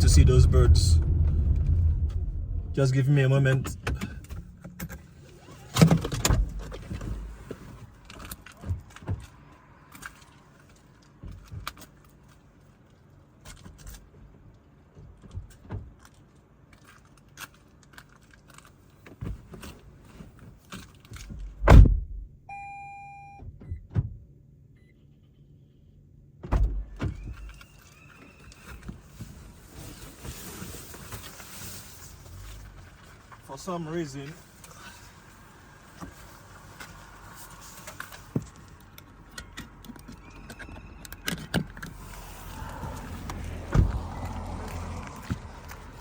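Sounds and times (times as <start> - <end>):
clicks and rustles inside car: 0.0 - 22.2, 26.4 - 46.0
car door thump: 21.6 - 22.2
electronic car warning chime: 22.5 - 23.4.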